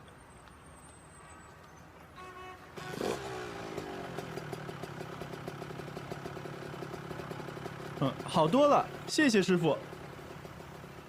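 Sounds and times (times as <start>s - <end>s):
motorcycle engine starting and idling: 2.8s - 11.0s.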